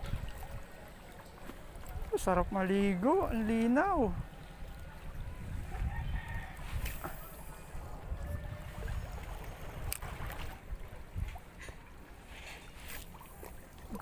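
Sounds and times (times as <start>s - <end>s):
wind on microphone: 0.0s - 0.6s, 3.1s - 11.7s
water lapping against rocks: 0.0s - 14.0s.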